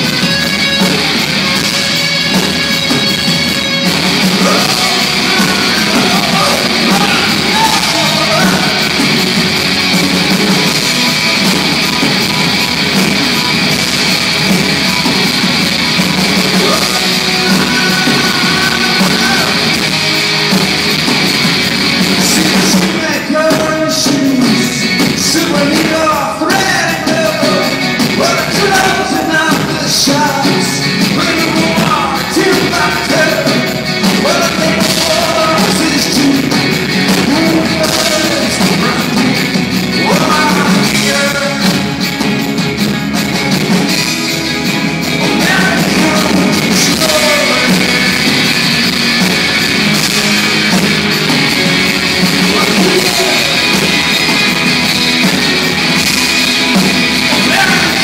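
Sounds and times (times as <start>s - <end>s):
live rock band playing: 0.0s - 58.0s
person singing: 4.1s - 9.6s, 16.3s - 20.5s, 22.1s - 42.0s, 45.0s - 54.9s, 55.8s - 58.0s.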